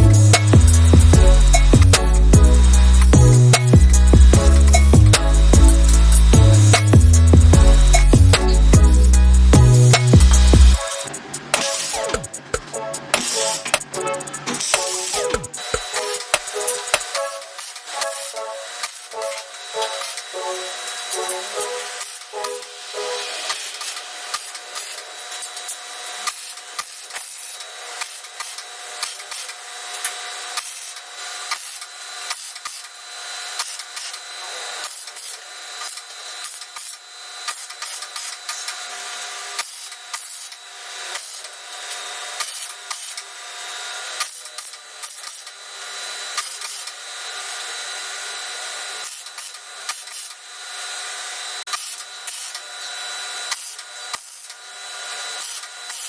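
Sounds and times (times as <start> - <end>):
machine whine: 0.0 - 24.0
tools scraping on metal: 9.8 - 24.0.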